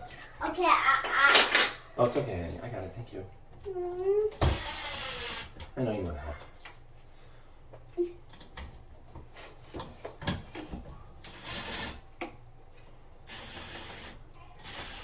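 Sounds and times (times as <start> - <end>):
cordless drill whirring: 4.5 - 5.5, 13.3 - 15.0.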